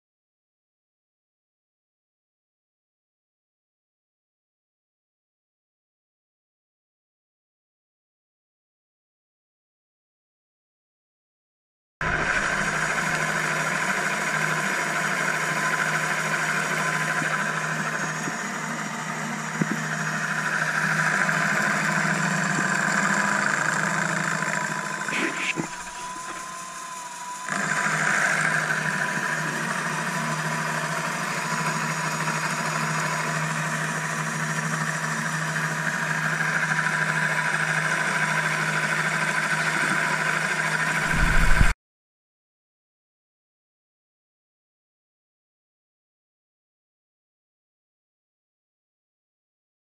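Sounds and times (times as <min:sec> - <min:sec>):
electric motor running: 0:12.0 - 0:41.7.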